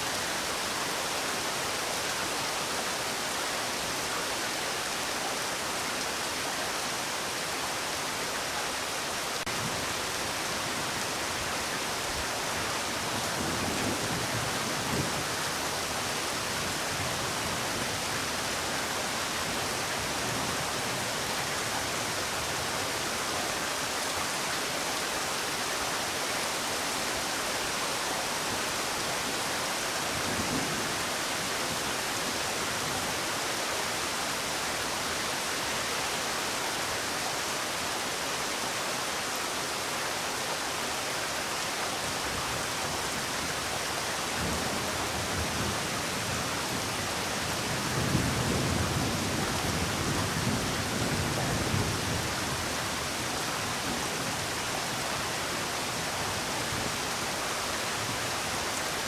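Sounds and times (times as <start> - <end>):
steady rain: 0.0 - 59.0
low rumble of thunder: 44.4 - 54.5.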